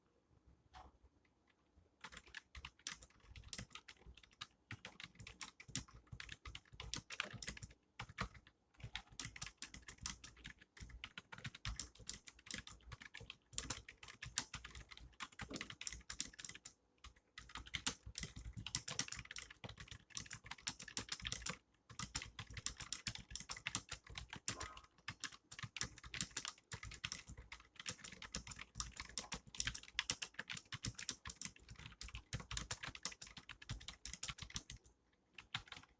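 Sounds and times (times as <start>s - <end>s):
keyboard typing: 2.0s - 35.9s.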